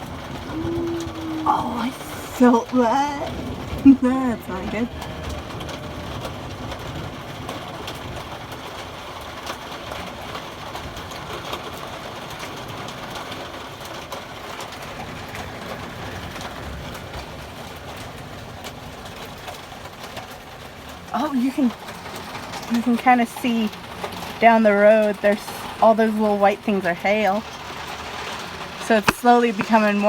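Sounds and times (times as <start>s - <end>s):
hailstones ticking: 0.0s - 30.0s
steady rain hiss: 0.0s - 30.0s.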